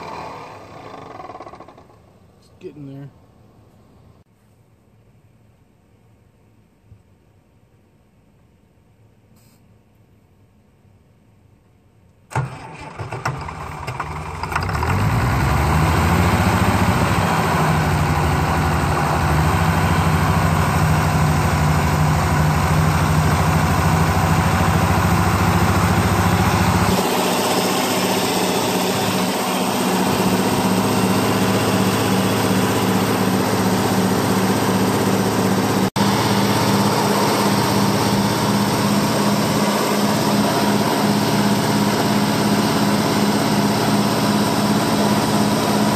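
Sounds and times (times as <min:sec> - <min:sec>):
starter cranking: 0:00.0 - 0:02.0
diesel engine running: 0:00.0 - 0:02.2, 0:12.3 - 0:45.9.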